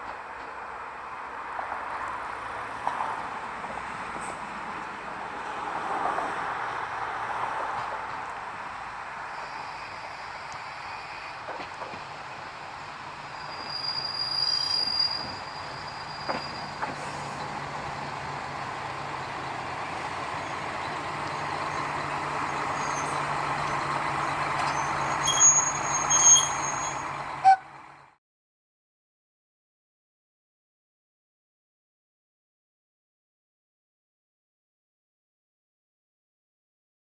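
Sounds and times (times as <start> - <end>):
diesel railcar engine hum: 0.0 - 28.2
train wheels squealing: 13.3 - 17.5, 20.3 - 27.6.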